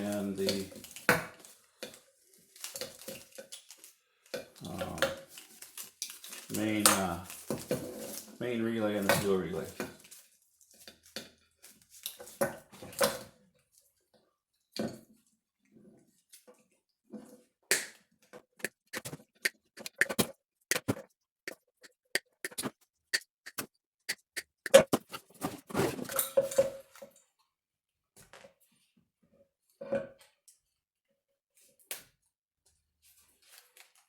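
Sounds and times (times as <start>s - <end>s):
wires rustling: 0.0s - 13.0s.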